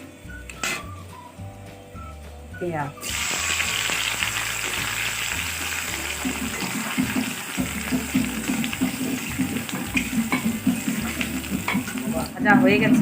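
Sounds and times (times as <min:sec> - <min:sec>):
background music: 0:00.0 - 0:13.0
onions sizzling in hot oil: 0:03.0 - 0:13.0.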